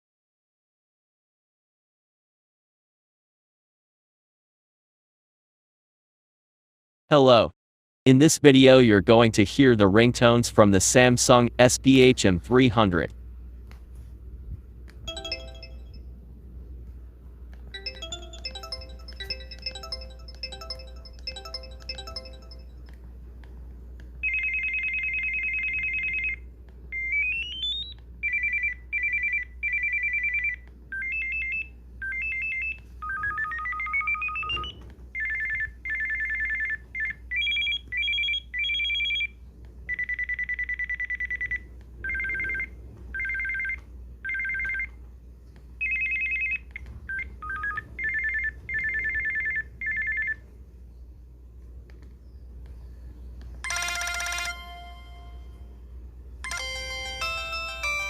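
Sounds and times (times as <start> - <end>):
steady low hum: 8.4 - 24.3, 54.4 - 58.0
short electronic melody: 15.1 - 16.0, 17.8 - 22.8
high electronic ring tones: 15.1 - 16.1, 17.8 - 22.8, 53.6 - 55.7, 56.4 - 58.0.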